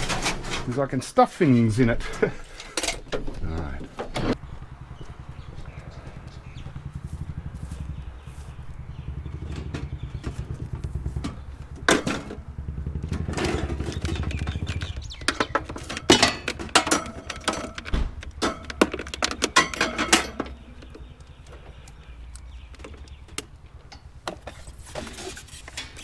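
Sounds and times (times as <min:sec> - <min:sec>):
scrap metal clanking: 0:00.0 - 0:01.0, 0:15.3 - 0:20.8, 0:24.3 - 0:26.0
vehicle engine idling: 0:01.7 - 0:26.0.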